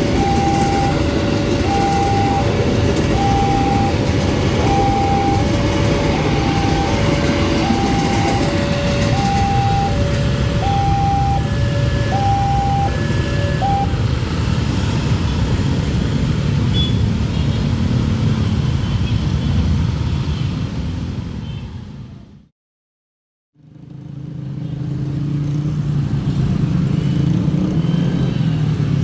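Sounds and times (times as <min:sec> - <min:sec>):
level crossing alarm two-tone warning: 0:00.0 - 0:14.1
loud rumble of passing traffic: 0:00.0 - 0:22.5, 0:23.6 - 0:29.0.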